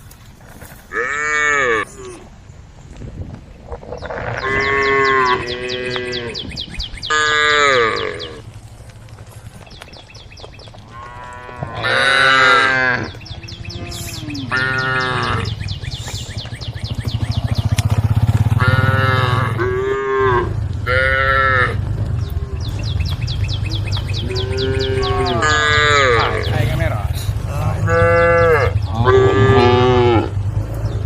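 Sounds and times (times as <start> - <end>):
cattle mooing: 0.9 - 2.2, 4.0 - 6.5, 7.1 - 8.4, 10.9 - 15.6, 18.5 - 31.0.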